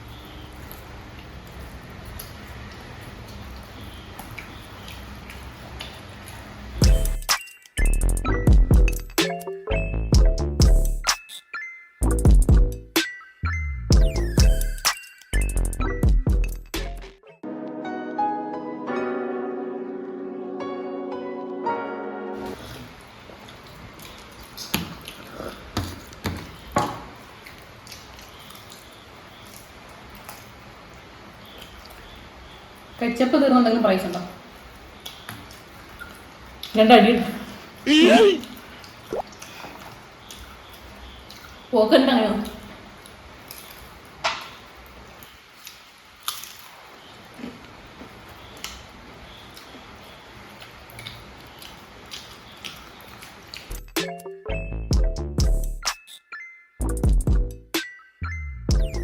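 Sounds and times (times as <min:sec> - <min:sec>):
pastry crunching and chewing: 0:45.6 - 0:47.1, 0:48.4 - 0:53.9.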